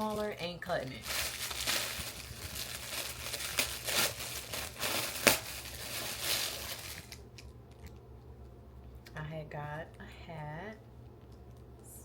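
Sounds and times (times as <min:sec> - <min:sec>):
plastic packaging crinkling: 0:00.0 - 0:07.5.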